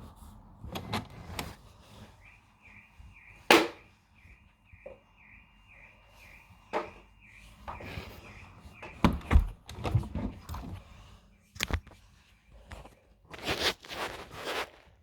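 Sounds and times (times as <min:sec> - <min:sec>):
faint car alarm siren: 0:01.7 - 0:10.0
knocks and thuds: 0:08.8 - 0:10.5.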